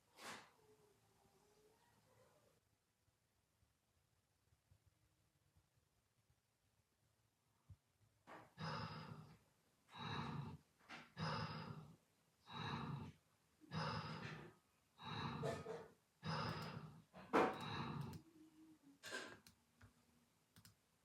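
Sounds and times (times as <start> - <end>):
person snoring: 8.6 - 10.6, 11.2 - 18.2.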